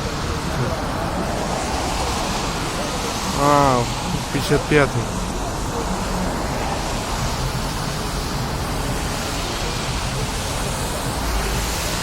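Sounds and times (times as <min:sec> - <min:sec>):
street traffic: 0:00.0 - 0:12.0.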